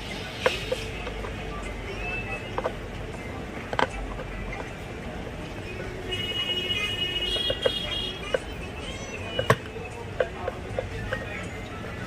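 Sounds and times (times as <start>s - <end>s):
clicks and knocks of parts: 3.6s - 4.8s.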